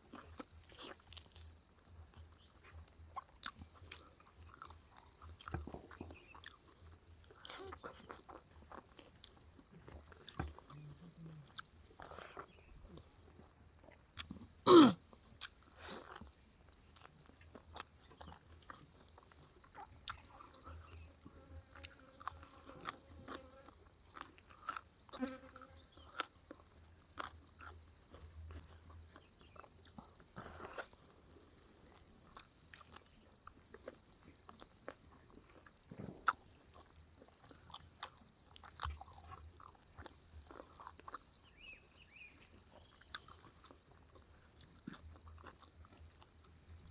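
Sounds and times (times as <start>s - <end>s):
person chewing and biting food: 0.1s - 10.8s, 11.5s - 14.4s, 15.4s - 20.7s, 21.3s - 41.6s, 42.7s - 46.9s.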